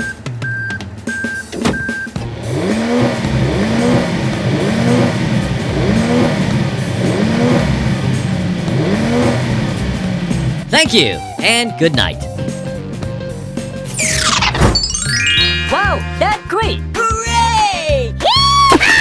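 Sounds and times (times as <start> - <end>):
cartoon vehicle engine running: 0.0 - 15.8
background music: 0.0 - 19.0.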